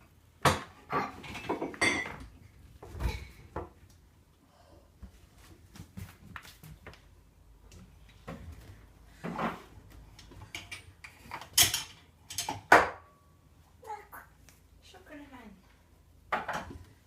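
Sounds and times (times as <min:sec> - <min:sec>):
household items knocking and clattering: 0:00.4 - 0:03.8, 0:16.3 - 0:17.0.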